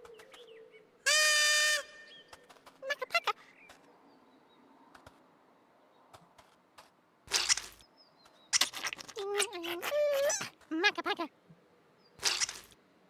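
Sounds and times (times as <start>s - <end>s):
squeaky puppet vocal sounds: 2.8s - 3.4s, 8.6s - 11.3s.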